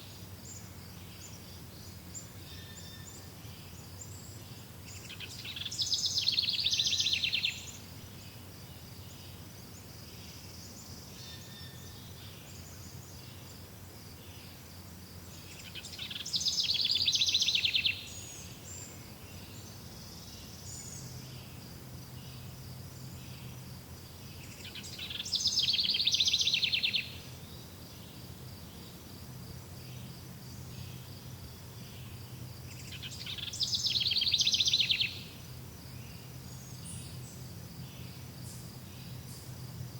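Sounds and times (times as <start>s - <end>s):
songbird trilled song: 0.0s - 13.6s, 15.2s - 39.8s
soft bird chirps: 15.4s - 29.1s, 31.8s - 35.3s.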